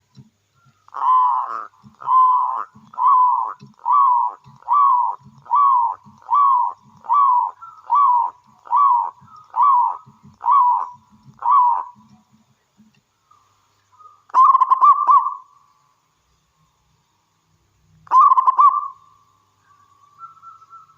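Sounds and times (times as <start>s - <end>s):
dove cooing: 0.6s - 12.5s, 14.0s - 15.6s, 18.0s - 19.1s.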